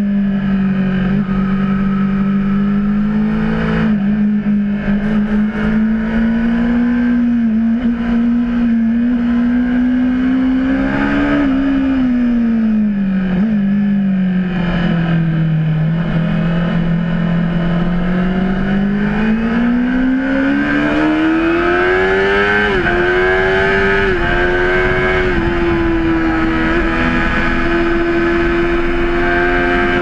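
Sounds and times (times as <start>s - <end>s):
motorcycle engine accelerating: 0.0s - 30.0s.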